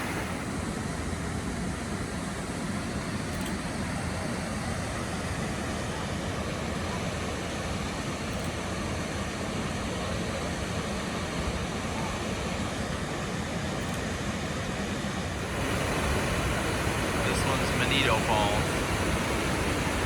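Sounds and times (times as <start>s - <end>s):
river water pouring over falls: 0.0s - 0.6s, 15.4s - 20.0s.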